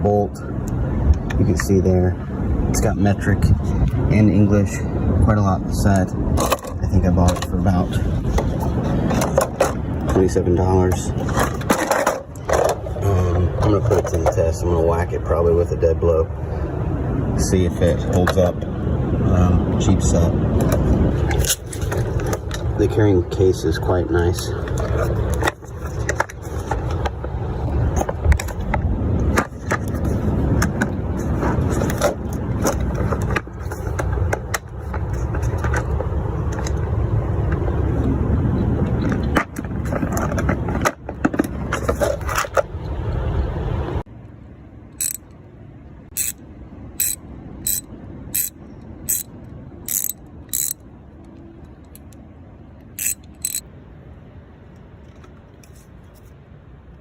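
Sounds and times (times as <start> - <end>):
outdoor handling noise: 6.3 - 14.5, 20.5 - 22.8, 24.3 - 38.2, 38.8 - 43.2, 44.1 - 53.8, 54.6 - 56.5
ratchet clicking: 45.0 - 45.3, 46.2 - 46.4, 47.0 - 48.5, 49.1 - 49.3, 49.9 - 50.8, 53.0 - 53.6
tools knocking and clinking: 49.9 - 50.8, 53.0 - 53.6.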